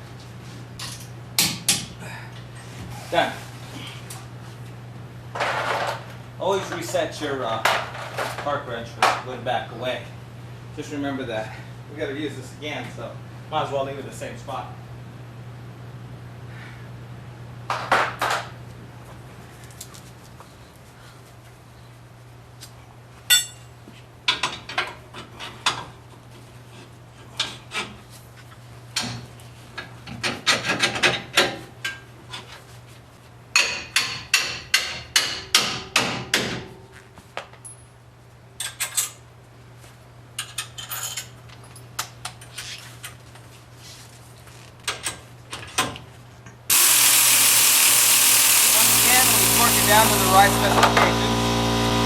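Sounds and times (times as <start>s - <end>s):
steady low hum: 0.0s - 24.3s.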